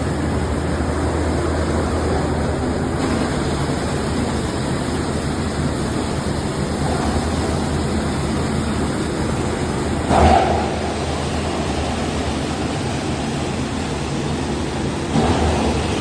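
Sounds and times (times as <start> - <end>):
even rushing noise: 9.6 - 16.0.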